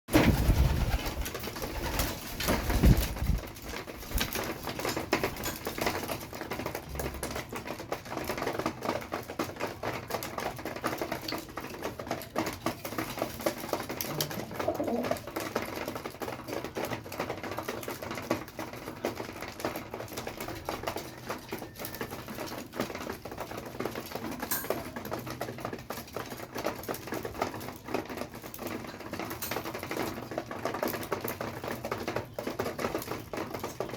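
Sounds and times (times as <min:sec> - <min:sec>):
beaks pecking grain: 0:00.2 - 0:33.9
pigeons cooing: 0:13.6 - 0:15.6.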